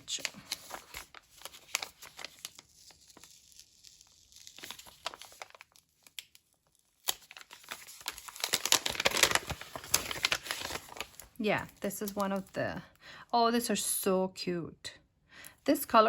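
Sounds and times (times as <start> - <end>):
packaging crinkling: 0.0 - 12.6.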